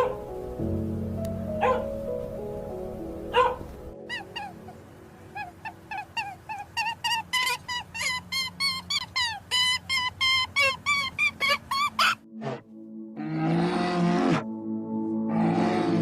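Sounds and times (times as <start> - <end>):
high-pitched animal calls: 4.0 - 12.6, 15.3 - 16.0
animal loud cry: 5.3 - 12.6, 15.3 - 16.0.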